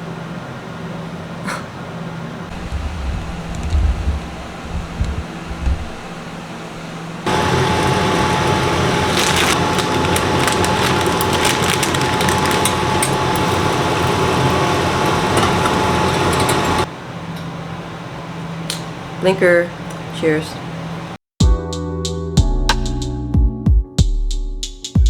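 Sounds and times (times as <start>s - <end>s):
water pipe bubbling with crackle: 2.5s - 16.9s.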